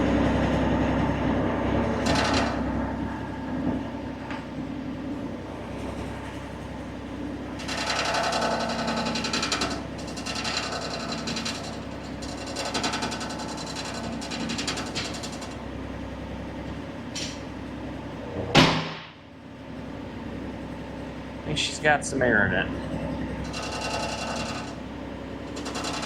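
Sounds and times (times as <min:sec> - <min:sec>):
excavator engine hum: 0:00.0 - 0:26.0
sharp loud knock: 0:18.5 - 0:19.2.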